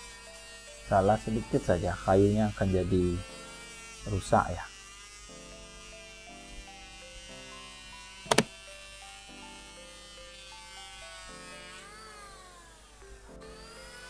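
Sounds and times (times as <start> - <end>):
background music melody: 0.0 - 14.0
electric planer motor whine: 0.0 - 14.0
sharp double click: 8.3 - 8.5.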